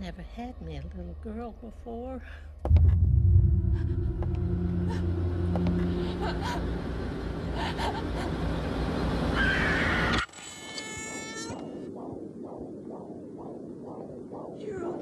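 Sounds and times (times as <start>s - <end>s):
heavy low rumble: 0.0s - 9.4s.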